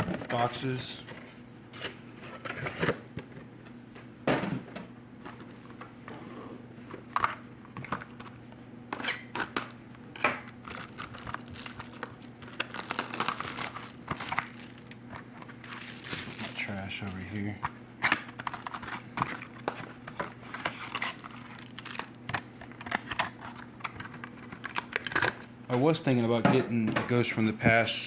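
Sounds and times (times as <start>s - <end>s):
plastic packaging crinkling: 9.1s - 25.4s.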